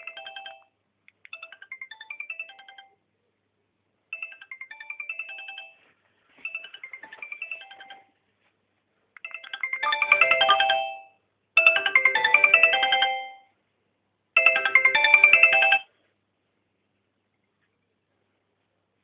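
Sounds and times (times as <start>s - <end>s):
phone ringtone melody: 0.0s - 0.7s, 1.3s - 3.0s, 4.2s - 8.2s, 9.2s - 13.5s, 14.4s - 15.9s.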